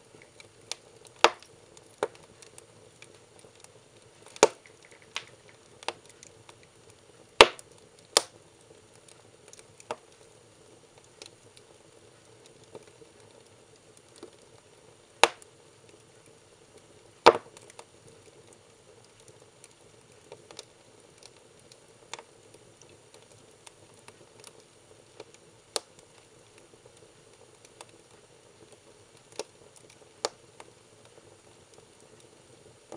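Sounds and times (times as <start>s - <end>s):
firewood crackling and popping: 0.0s - 32.9s
low hiss of fire: 0.0s - 32.9s.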